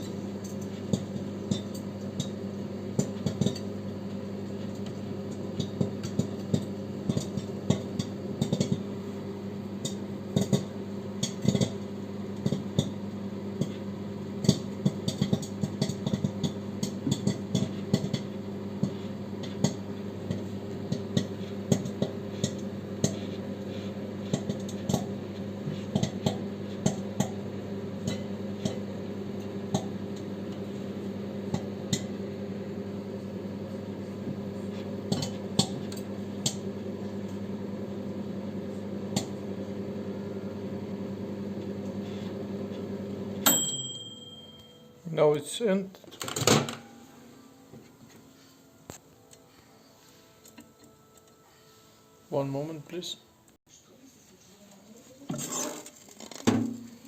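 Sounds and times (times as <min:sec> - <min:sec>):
popcorn popping: 0:00.0 - 0:30.8, 0:31.4 - 0:32.8, 0:34.2 - 0:36.8, 0:39.1 - 0:39.6, 0:55.1 - 0:57.0
microwave oven hum: 0:00.0 - 0:53.6, 0:54.9 - 0:57.0.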